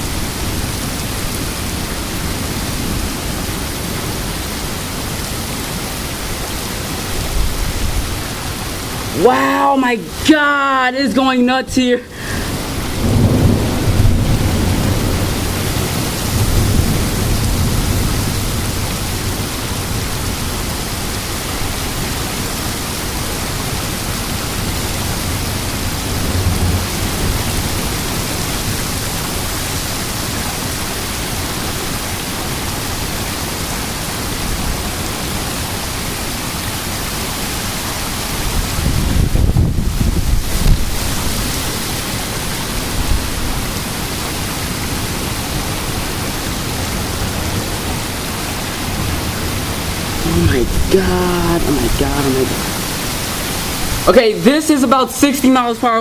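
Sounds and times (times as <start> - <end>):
heavy wind-driven rain: 0.0 - 56.0
low thunder rumbling: 12.4 - 19.4, 48.9 - 53.3.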